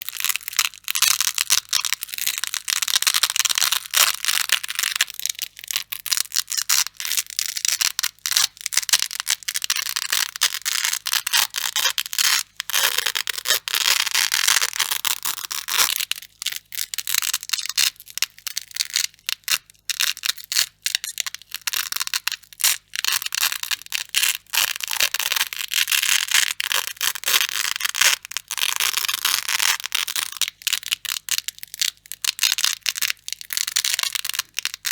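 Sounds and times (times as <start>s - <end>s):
velcro ripping apart: 0.2s - 19.1s.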